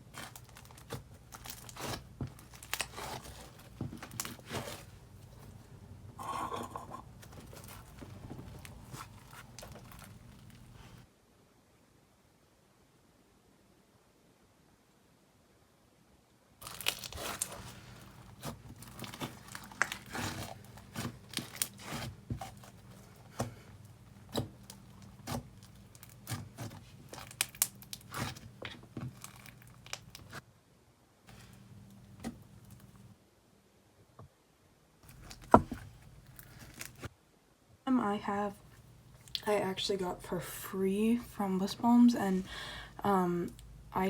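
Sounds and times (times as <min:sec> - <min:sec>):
slime crackling and popping: 0:00.1 - 0:04.6, 0:16.6 - 0:22.8, 0:24.3 - 0:30.4.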